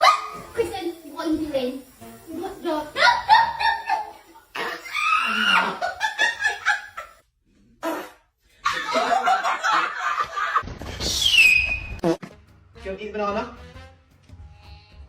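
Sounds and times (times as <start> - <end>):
person laughing: 3.0 - 7.2.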